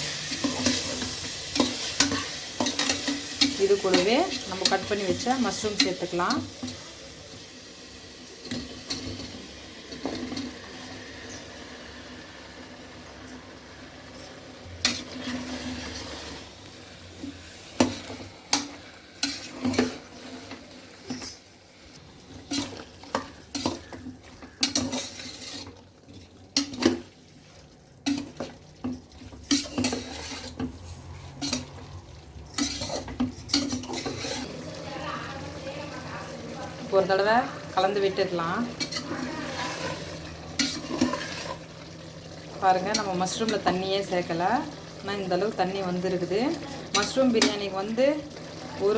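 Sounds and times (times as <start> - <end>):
food sizzling in pot: 0.0 - 48.9
metal spoon scraping pot: 17.8 - 20.7, 22.4 - 25.8, 29.2 - 34.5, 37.8 - 41.7.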